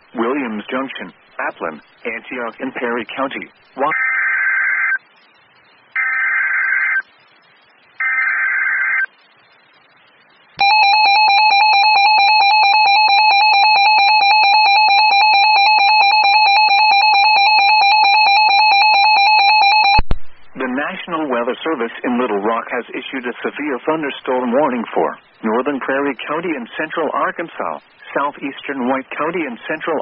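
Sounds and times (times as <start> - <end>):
steady alert attention tone: 10.6 - 20.0.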